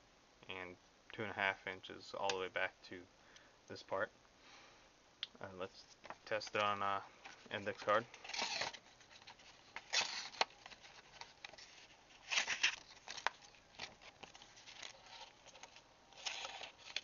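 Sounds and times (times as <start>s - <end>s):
man speaking: 5.3s - 8.1s.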